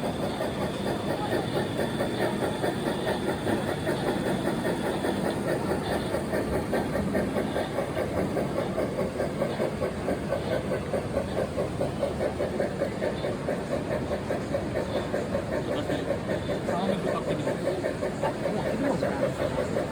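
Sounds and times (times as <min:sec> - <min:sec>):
model steam locomotive chuffing: 0:00.0 - 0:19.9.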